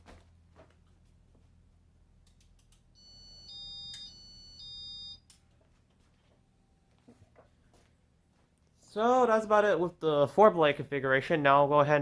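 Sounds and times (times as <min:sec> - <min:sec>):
low steady hum: 0:00.0 - 0:11.9
two-tone electronic beeping: 0:03.0 - 0:05.3.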